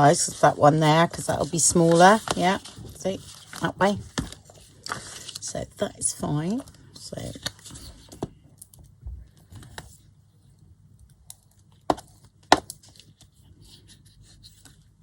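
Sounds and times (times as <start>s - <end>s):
paper rustling: 0.0s - 5.6s.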